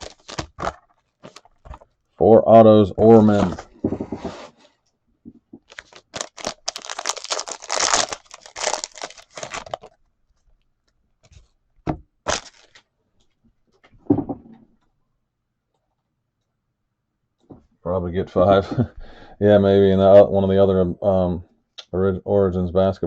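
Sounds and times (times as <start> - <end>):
wrapping tearing and crinkling: 0.0 - 2.1, 5.6 - 10.6, 12.2 - 12.9
thump: 14.1 - 14.6.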